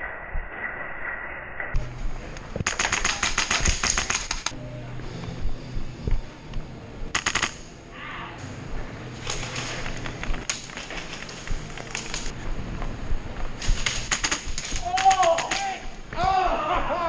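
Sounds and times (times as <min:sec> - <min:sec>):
airsoft guns automatic bursts: 0:02.6 - 0:04.5, 0:07.2 - 0:07.6, 0:13.7 - 0:15.6.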